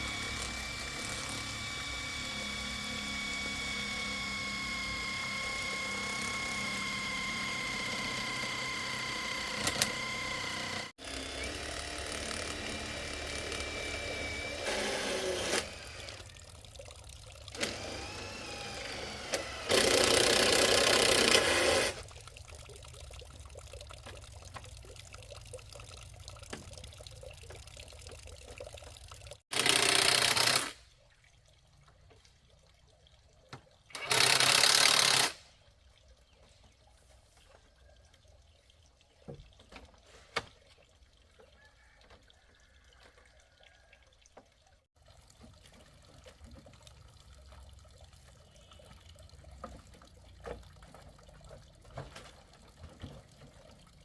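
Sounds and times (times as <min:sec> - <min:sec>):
water pouring and splashing: 0:12.7 - 0:54.0.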